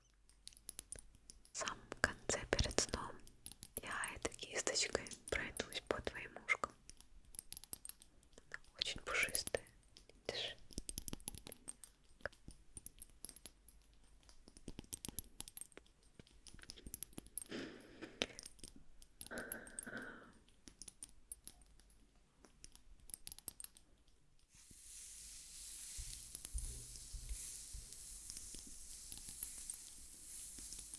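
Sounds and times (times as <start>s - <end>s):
small crisp clicks and taps: 0.0s - 30.9s
steady hiss: 24.5s - 30.9s.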